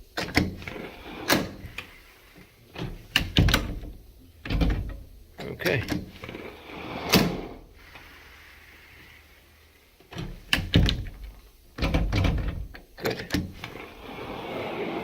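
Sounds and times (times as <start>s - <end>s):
door rattling: 2.7s - 6.4s, 10.1s - 14.6s.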